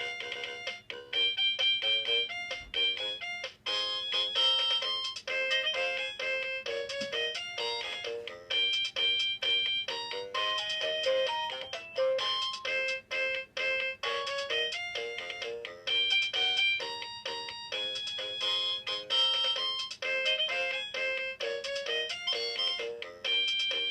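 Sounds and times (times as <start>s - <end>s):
toy keyboard synthesized melody: 0.0s - 23.9s.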